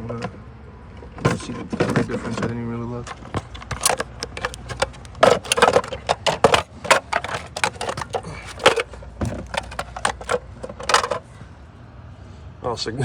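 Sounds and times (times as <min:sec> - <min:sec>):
hard plastic parts clicking: 0:01.3 - 0:11.3.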